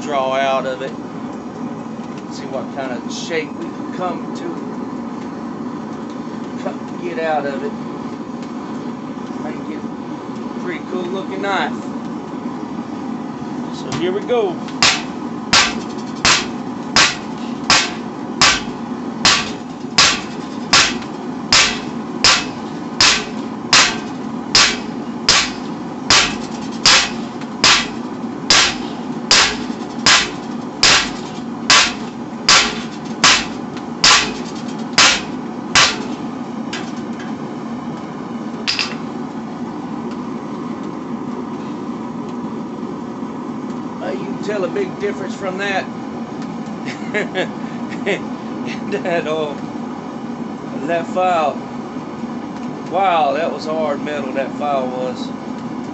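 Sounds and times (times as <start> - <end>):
hammer striking steel on anvil: 14.8 - 36.2, 38.7 - 39.0.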